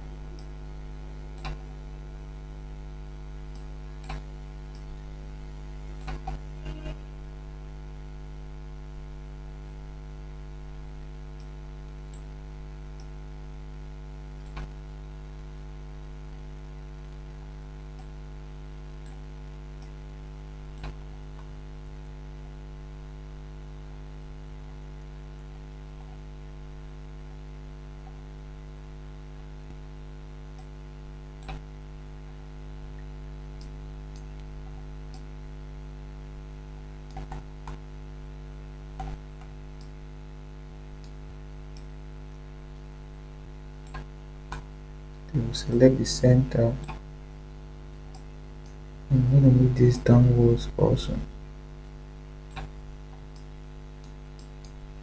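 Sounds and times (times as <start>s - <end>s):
electrical mains hum: 0.0s - 55.0s
sharp clicks: 1.4s - 1.6s, 37.1s - 37.8s.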